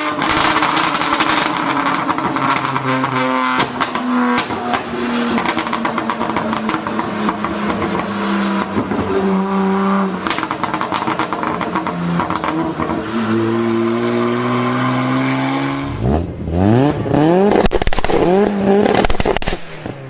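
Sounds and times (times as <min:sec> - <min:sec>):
exhaust pops and crackles: 0:00.0 - 0:09.2, 0:10.1 - 0:13.0, 0:17.4 - 0:20.0
car engine revving: 0:00.0 - 0:20.0
exhaust bangs: 0:00.0 - 0:20.0.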